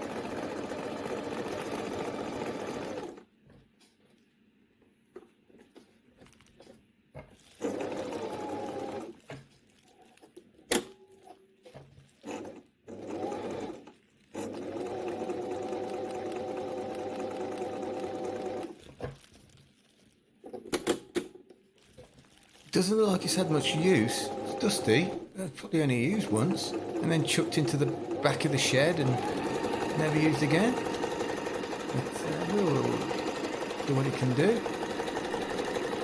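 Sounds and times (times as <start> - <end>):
sewing machine running: 0.0 - 3.2, 7.6 - 9.2, 12.2 - 18.8, 22.8 - 36.0.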